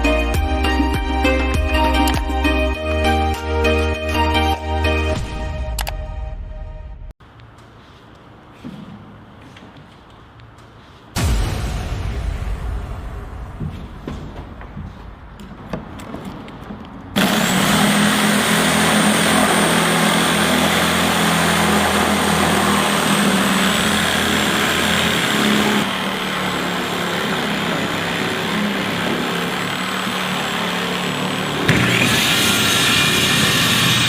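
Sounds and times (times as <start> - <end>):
circular saw running: 17.2 - 34.0.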